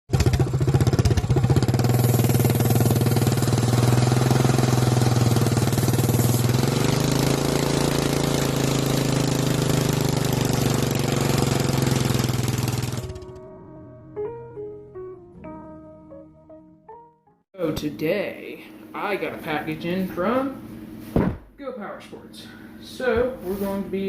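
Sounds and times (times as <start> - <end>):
small petrol engine running: 0.1 - 13.4.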